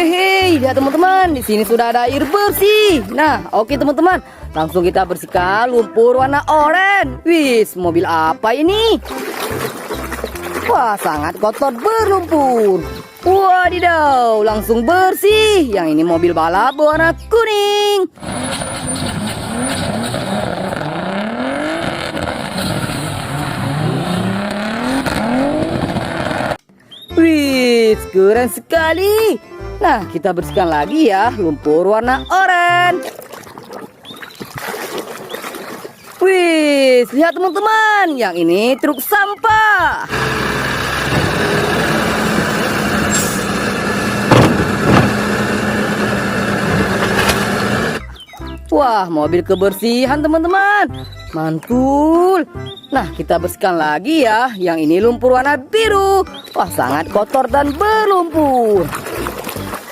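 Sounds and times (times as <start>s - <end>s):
race car engines revving past: 18.2s - 26.6s, 40.1s - 48.0s
vehicle engine idling: 40.1s - 48.1s
loud thuds: 43.4s - 47.7s.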